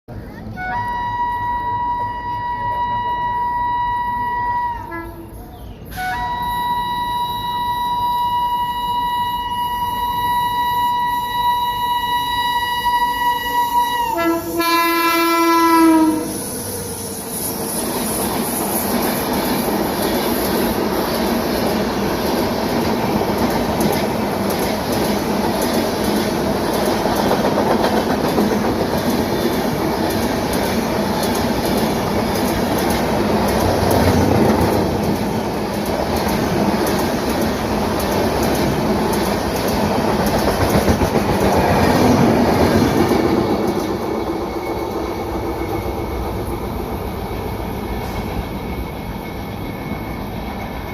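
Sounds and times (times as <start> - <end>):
train wheels rumbling on rails: 0.1 - 50.9
locomotive horn: 0.6 - 16.5.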